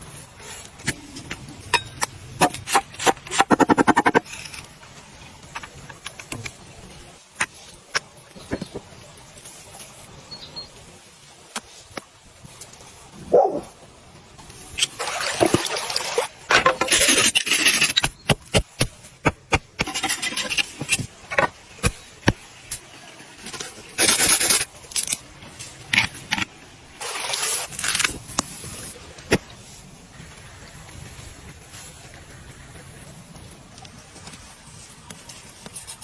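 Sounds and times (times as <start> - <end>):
scraping and rubbing: 16.5 - 29.0.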